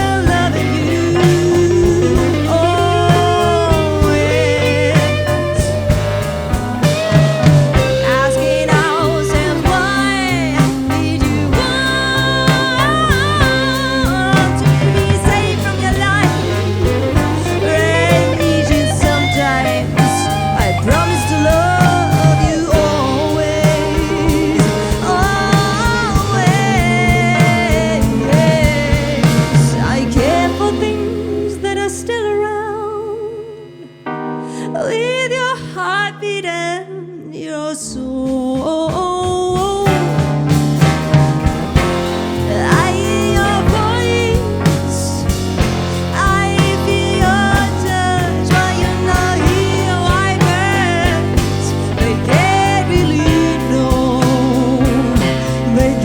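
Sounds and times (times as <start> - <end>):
drums: 0.0 - 33.5, 37.8 - 56.0
bass guitar: 0.0 - 34.3, 37.9 - 56.0
live band playing slow song: 0.0 - 34.8, 38.1 - 56.0
person singing: 0.0 - 40.3, 41.5 - 56.0.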